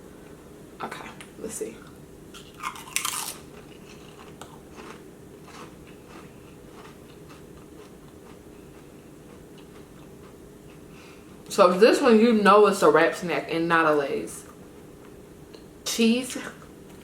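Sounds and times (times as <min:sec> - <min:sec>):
steady low hum: 0:00.0 - 0:17.0
person chewing potato chips: 0:02.3 - 0:11.4.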